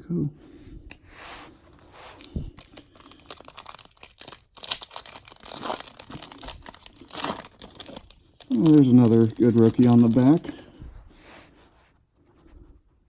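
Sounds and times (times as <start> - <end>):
foil wrapper tearing and crinkling: 1.7 - 10.7.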